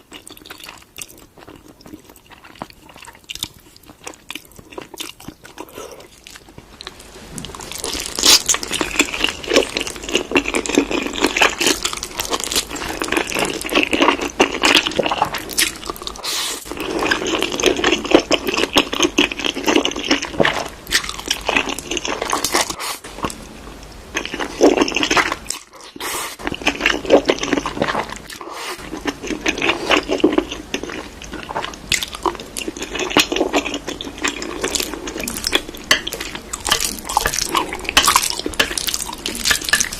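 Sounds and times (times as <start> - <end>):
person chewing and crunching food: 0.0 - 39.9.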